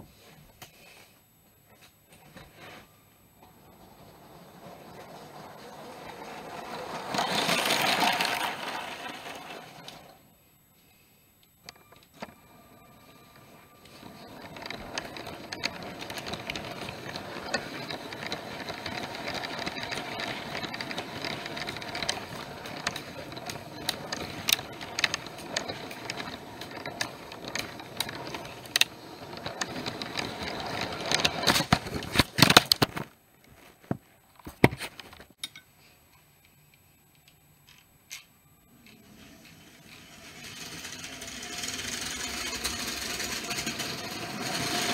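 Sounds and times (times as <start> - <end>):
toy train rattling hum: 2.6 - 10.3, 11.7 - 32.3, 37.7 - 44.9
toy train crashing clatter: 3.4 - 10.2, 13.4 - 33.1, 38.9 - 44.9
scattered clicks: 11.4 - 33.0.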